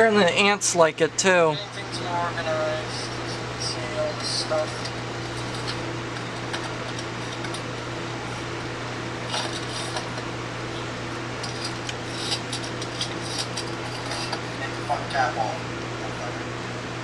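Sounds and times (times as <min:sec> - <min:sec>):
electrical fan hum: 0:00.0 - 0:17.0.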